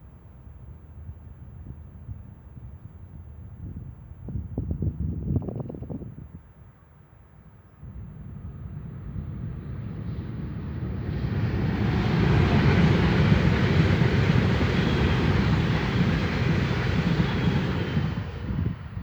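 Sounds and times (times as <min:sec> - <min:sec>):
diesel train passing: 0:08.0 - 0:19.0.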